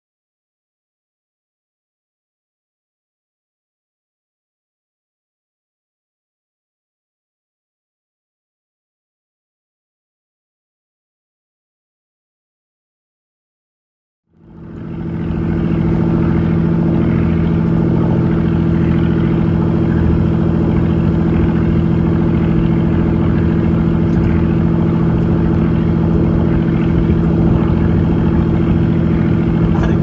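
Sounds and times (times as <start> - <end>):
boat engine humming: 14.4 - 30.0.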